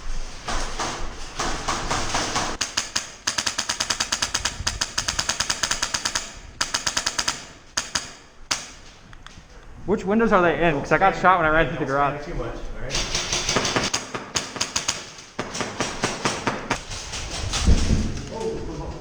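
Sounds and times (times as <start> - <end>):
airsoft gun firing full-auto: 2.1 - 8.8, 13.0 - 16.8.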